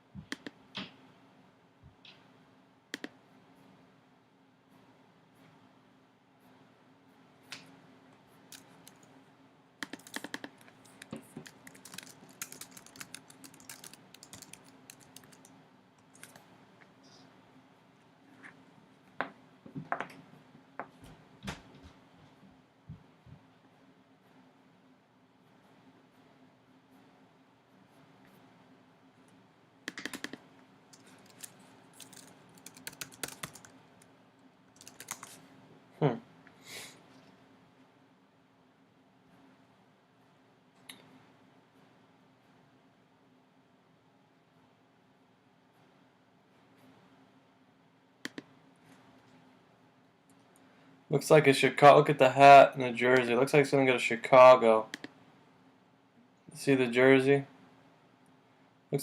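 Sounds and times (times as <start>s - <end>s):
typing on computer keyboard: 9.8s - 16.4s, 29.9s - 30.4s, 31.0s - 33.8s, 34.8s - 35.4s.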